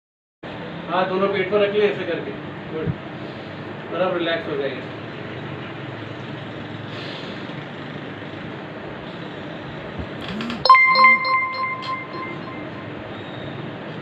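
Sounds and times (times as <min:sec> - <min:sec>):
metallic chime ringing: 0:10.7 - 0:13.0.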